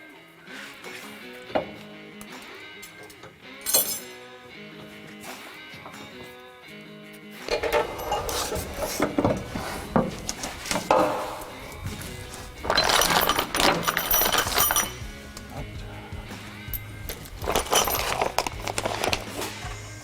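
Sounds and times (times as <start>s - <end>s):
background music: 0.0s - 20.0s
metal tools clinking and knocking: 2.9s - 4.2s, 7.5s - 15.1s, 16.7s - 19.8s.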